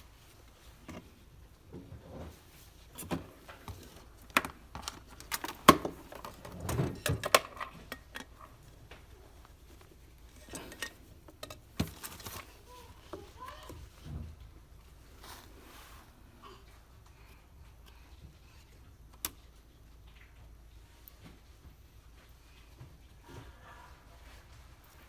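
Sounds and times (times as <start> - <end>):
parts clattering on workbench: 3.0 - 8.6, 10.3 - 12.5.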